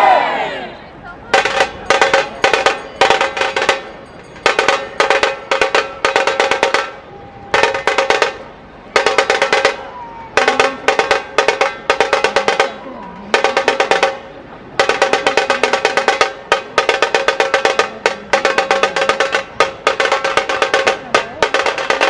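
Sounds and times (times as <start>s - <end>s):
fast drum rolls: 1.3s - 22.0s.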